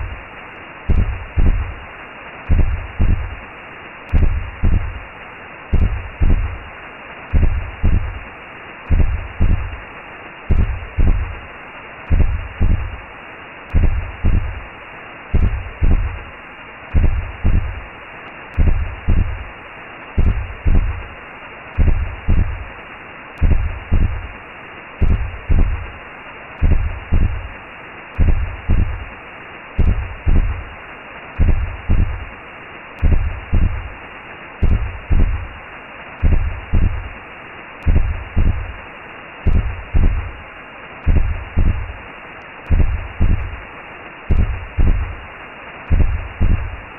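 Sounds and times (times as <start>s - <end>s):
low heartbeat: 0.0s - 0.2s, 0.9s - 1.8s, 2.5s - 3.4s, 4.1s - 5.0s, 5.7s - 6.6s, 7.3s - 8.2s, 8.9s - 9.8s, 10.5s - 11.4s, 12.1s - 13.0s, 13.7s - 14.7s, 15.3s - 16.2s, 16.9s - 17.9s, 18.6s - 19.5s, 20.2s - 21.1s, 21.8s - 22.7s, 23.4s - 24.3s, 25.0s - 25.9s, 26.6s - 27.6s, 28.2s - 29.1s, 29.8s - 30.7s, 31.4s - 32.3s, 33.0s - 33.9s, 34.6s - 35.6s, 36.2s - 37.2s, 37.8s - 38.8s, 39.5s - 40.4s, 41.0s - 42.0s, 42.7s - 43.6s, 44.3s - 45.2s, 45.9s - 46.8s
whooshing hiss: 0.0s - 46.9s.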